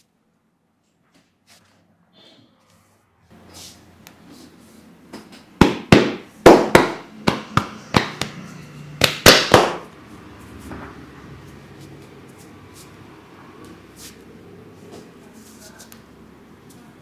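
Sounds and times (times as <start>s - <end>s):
hand slaps: 9.0s - 9.8s.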